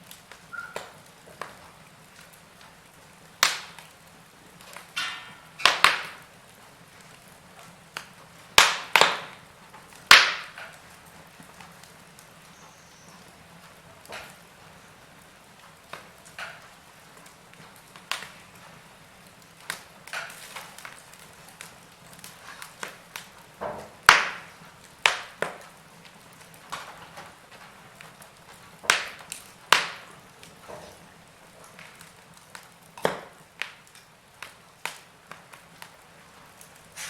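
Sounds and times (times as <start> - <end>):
low hiss of fire: 0.0 - 37.0
wood fire crackling: 0.0 - 37.0.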